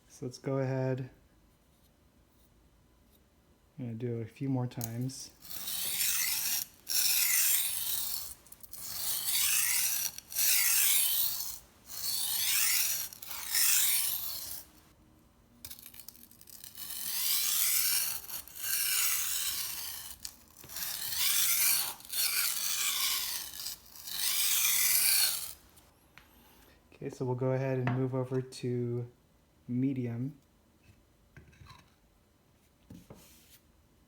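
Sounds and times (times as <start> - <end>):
knife rasping on whetstone: 5.4 - 14.8, 16.4 - 25.6.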